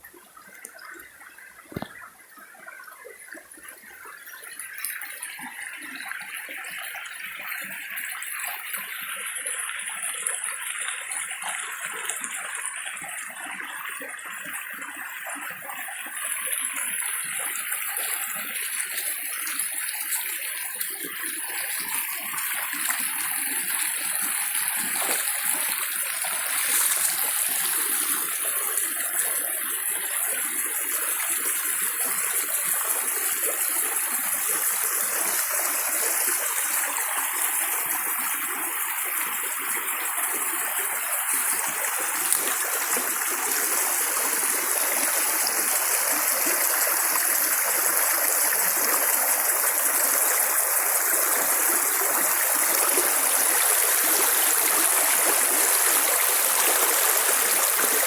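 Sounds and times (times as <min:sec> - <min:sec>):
water running: 0:17.4 - 0:38.6.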